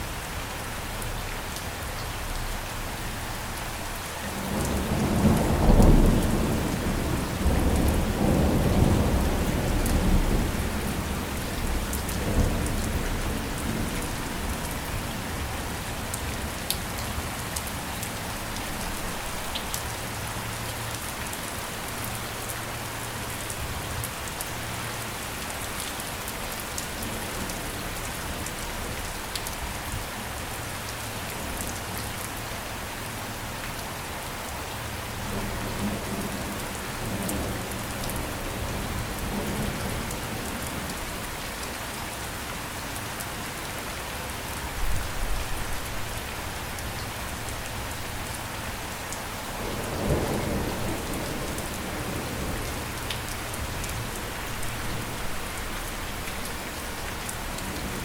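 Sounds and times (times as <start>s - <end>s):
rain pattering: 0.0s - 58.0s
low rumble of thunder: 4.3s - 16.5s, 49.5s - 58.0s.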